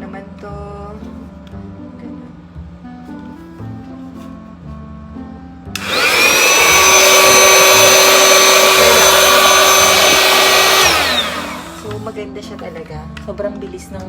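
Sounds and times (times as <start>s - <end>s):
electric air pump motor whining: 5.8s - 12.0s.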